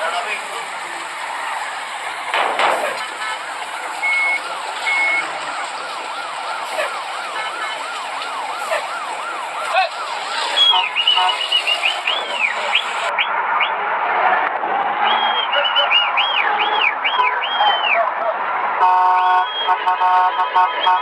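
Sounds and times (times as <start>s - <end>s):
electronic siren warbling: 3.8s - 13.1s.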